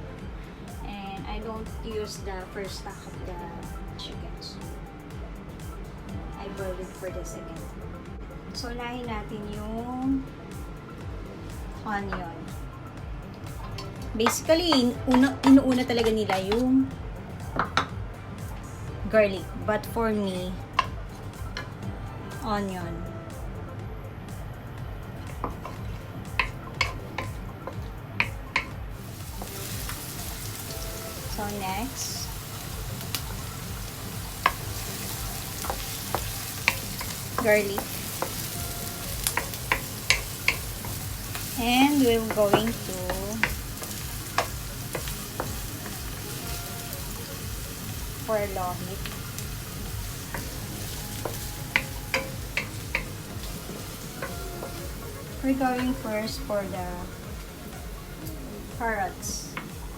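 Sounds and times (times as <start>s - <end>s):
onion sizzling in a pan: 13.5s - 16.8s, 25.2s - 59.9s
utensil knocking against pan: 39.2s - 41.0s, 42.2s - 46.0s.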